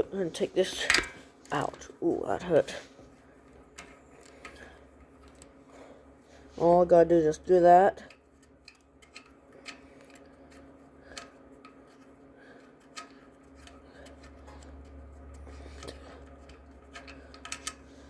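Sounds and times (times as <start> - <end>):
steady low hum: 0.0 - 18.0
clicks of small parts handled: 12.8 - 17.8.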